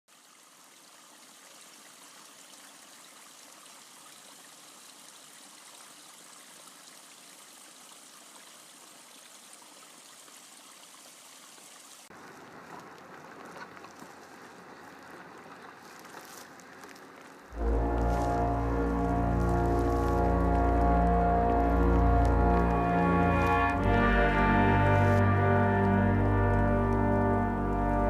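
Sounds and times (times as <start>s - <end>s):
stream water rushing: 0.1s - 28.0s.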